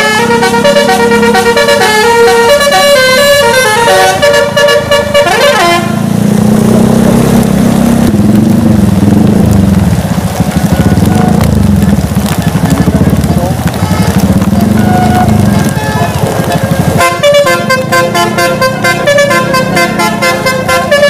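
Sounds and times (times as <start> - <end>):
musical air horn melody: 0.0 - 6.1, 14.8 - 21.0
vehicle engine low rumble: 0.0 - 21.0.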